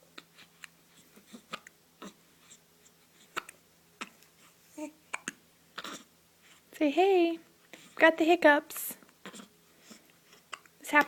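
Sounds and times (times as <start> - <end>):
faint hiccups: 3.3 - 4.2, 4.8 - 6.1.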